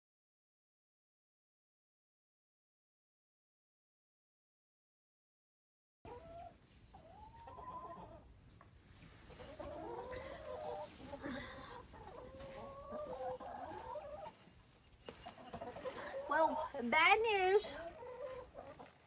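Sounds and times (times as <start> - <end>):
chickens clucking: 6.1 - 19.0.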